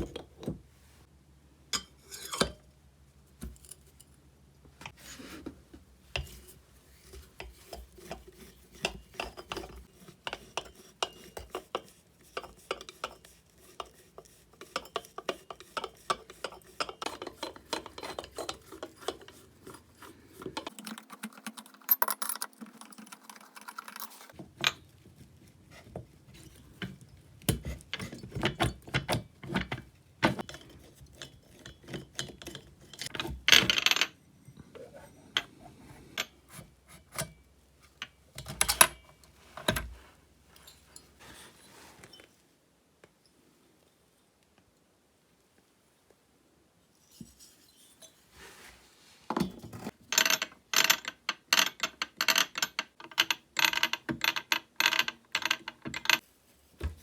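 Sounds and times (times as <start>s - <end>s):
tools and metal parts clinking: 14.6s - 24.9s, 49.8s - 56.2s.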